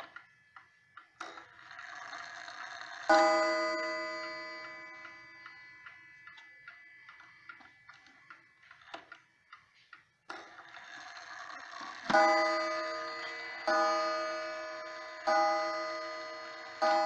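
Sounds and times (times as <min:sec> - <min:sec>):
mantel clock ticking: 0:00.0 - 0:17.0
clock gong ringing: 0:01.6 - 0:06.9, 0:10.7 - 0:17.0.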